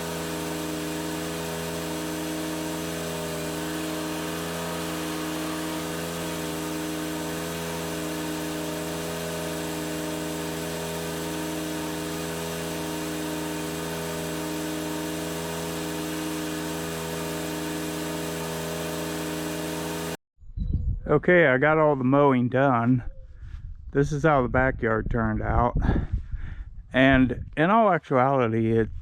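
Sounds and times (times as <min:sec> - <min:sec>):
lawn mower engine running: 0:00.0 - 0:20.2.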